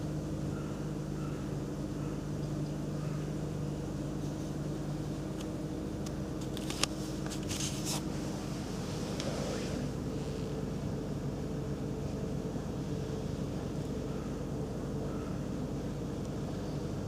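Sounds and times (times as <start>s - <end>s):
steady mechanical hum: 0.0s - 17.0s.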